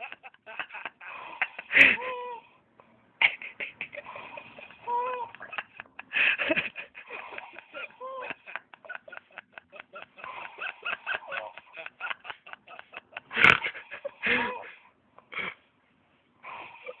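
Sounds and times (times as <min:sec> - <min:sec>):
person snoring and snorting: 0:03.9 - 0:04.8, 0:16.4 - 0:17.0.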